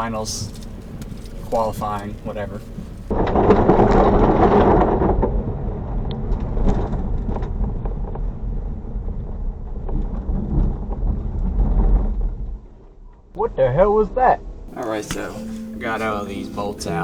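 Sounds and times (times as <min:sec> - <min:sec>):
road noise rumble: 0:00.0 - 0:03.5, 0:14.7 - 0:17.0
small knocks and rattles: 0:00.4 - 0:03.2.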